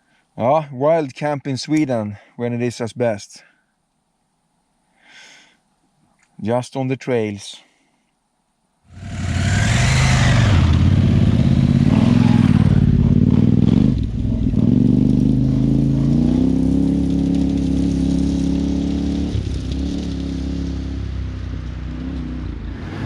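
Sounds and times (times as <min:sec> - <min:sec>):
motorcycle engine revving: 0:08.9 - 0:23.0.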